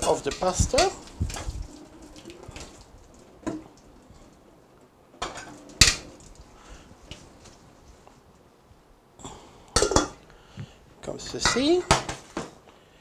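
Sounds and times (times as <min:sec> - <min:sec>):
pot and metal utensils clanking: 0:00.0 - 0:02.7, 0:05.2 - 0:06.2, 0:09.8 - 0:10.2, 0:11.2 - 0:12.2.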